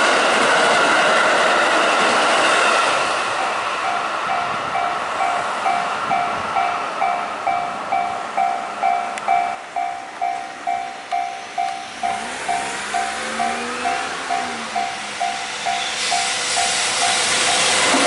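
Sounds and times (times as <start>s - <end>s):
train running past: 0.0s - 18.0s
level-crossing bell dinging: 3.8s - 17.8s
whine rising in pitch: 11.1s - 18.0s.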